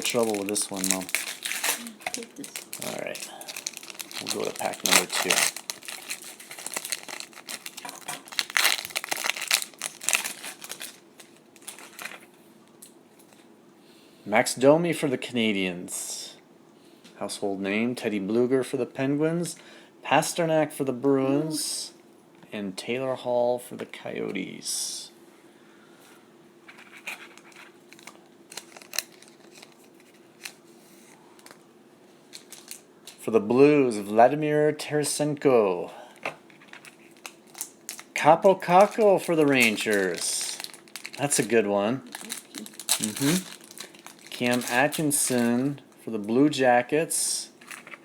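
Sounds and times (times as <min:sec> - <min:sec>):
card pack wrapper crinkling: 0:00.0 - 0:12.2, 0:26.7 - 0:31.6, 0:32.3 - 0:33.2, 0:36.5 - 0:45.7, 0:47.6 - 0:48.0.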